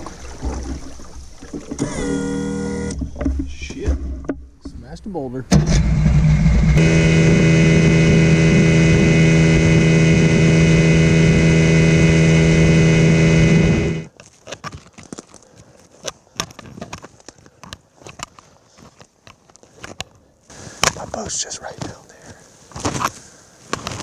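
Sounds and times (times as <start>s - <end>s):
boat motor running: 1.4s - 3.4s, 5.6s - 14.1s, 20.5s - 24.0s
faint crackles and rustles: 14.1s - 24.0s.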